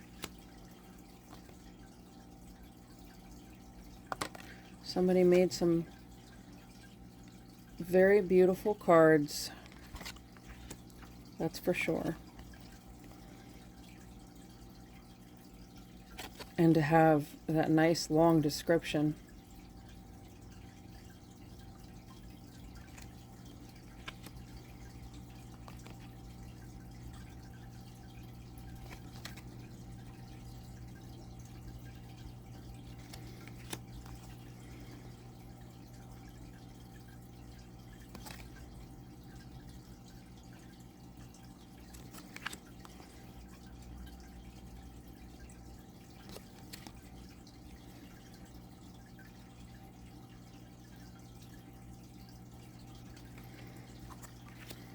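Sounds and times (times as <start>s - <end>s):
cardstock cards clicking: 33.0s - 34.3s, 41.9s - 43.0s.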